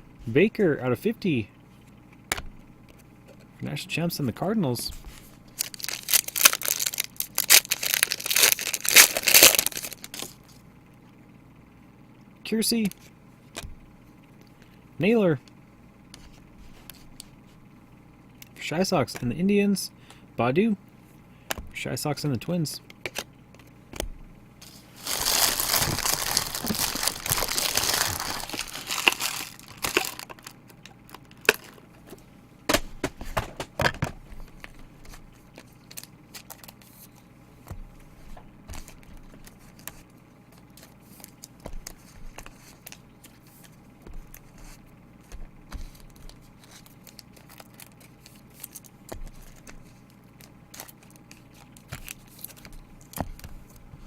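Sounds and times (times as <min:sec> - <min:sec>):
cards and packaging clicking: 0:05.5 - 0:10.4, 0:24.6 - 0:31.8, 0:34.5 - 0:37.2, 0:45.7 - 0:49.8, 0:50.4 - 0:53.6
wrapper tearing and crumpling: 0:05.6 - 0:10.4, 0:24.6 - 0:31.6, 0:46.0 - 0:49.7.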